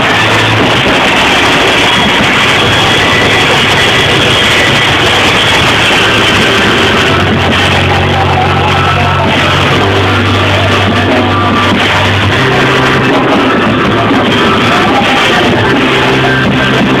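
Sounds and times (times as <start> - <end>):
loud band music: 0.0 - 17.0.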